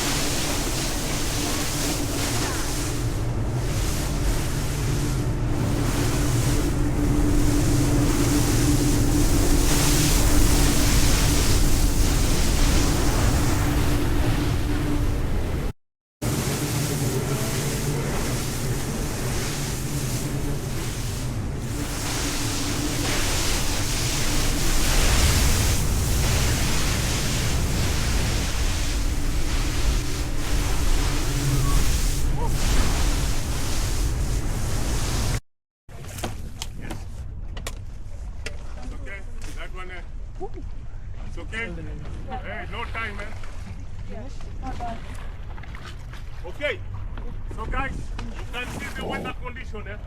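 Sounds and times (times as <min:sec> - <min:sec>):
wind buffeting microphone: 0:00.0 - 0:15.7
speedboat engine drone: 0:00.0 - 0:35.4
water rushing past hull: 0:00.0 - 0:35.4
wind on microphone: 0:00.0 - 0:35.4
water against boat hull: 0:42.0 - 0:49.4.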